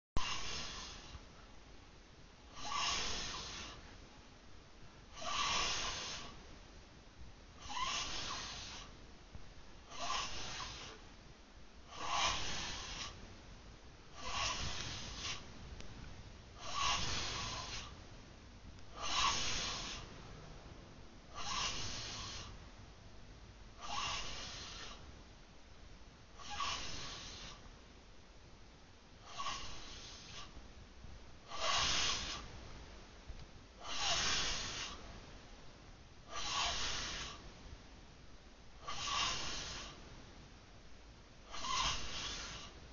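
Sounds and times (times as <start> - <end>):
breathy hissing snores: 0.2 - 1.4, 2.4 - 4.0, 5.0 - 6.4, 7.6 - 9.0, 9.8 - 11.0, 11.8 - 13.2, 14.0 - 15.8, 16.5 - 18.0, 18.9 - 20.1, 21.2 - 22.6, 23.7 - 25.1, 26.3 - 27.8, 29.2 - 30.6, 31.4 - 32.5, 33.7 - 35.1, 36.2 - 37.5, 38.8 - 40.0, 41.4 - 42.8.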